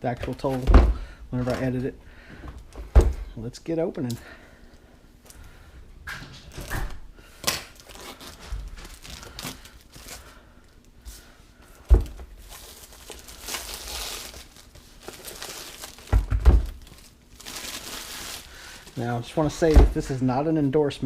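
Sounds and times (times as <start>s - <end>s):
packaging tearing and crinkling: 7.4s - 10.2s, 12.4s - 19.0s.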